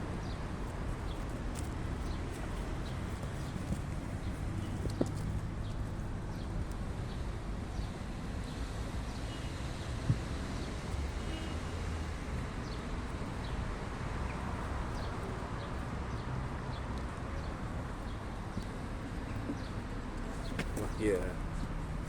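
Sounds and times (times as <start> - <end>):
kitten paws tapping and scuffling: 0.7 - 6.0, 16.8 - 21.0.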